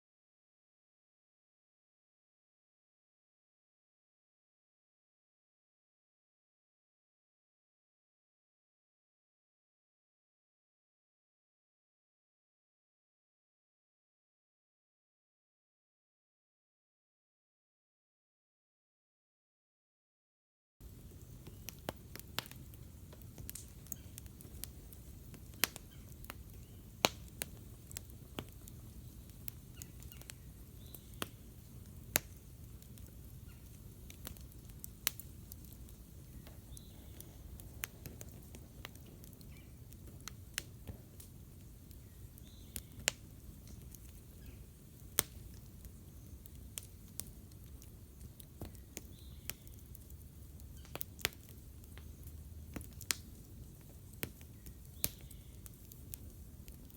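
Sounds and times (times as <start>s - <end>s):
low fire rumble: 20.8s - 56.9s
wood crackling and popping: 20.8s - 56.9s.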